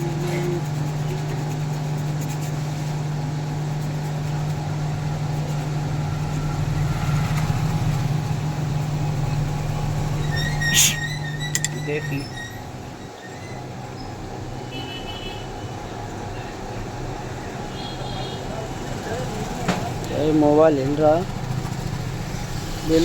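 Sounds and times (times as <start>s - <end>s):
electric fan motor hum: 0.0s - 13.0s, 15.4s - 23.0s
sharp click: 11.6s - 11.8s.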